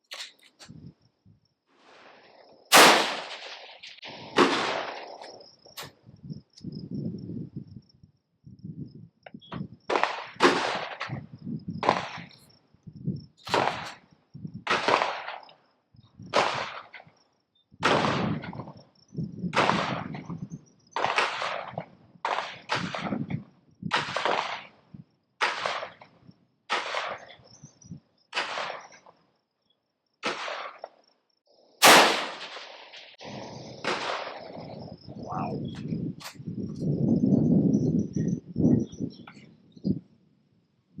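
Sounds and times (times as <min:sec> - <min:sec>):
insect trill: 0:00.0 - 0:23.9, 0:24.6 - 0:41.0
rifle shots: 0:02.7 - 0:05.4, 0:09.9 - 0:11.2, 0:14.7 - 0:15.5, 0:21.0 - 0:23.2, 0:23.9 - 0:24.8, 0:25.4 - 0:26.1, 0:26.7 - 0:27.4, 0:28.4 - 0:29.0, 0:30.2 - 0:30.8, 0:31.8 - 0:34.6.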